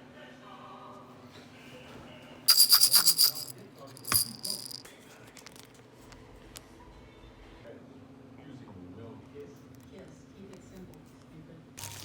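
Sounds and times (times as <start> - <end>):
jingling rattle shaken: 2.5 - 4.8.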